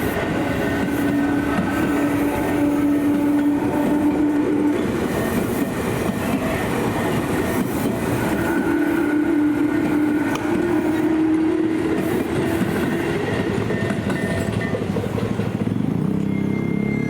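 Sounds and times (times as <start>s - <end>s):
train low whine: 0.0s - 17.0s
wheels clattering over rails: 12.2s - 17.0s.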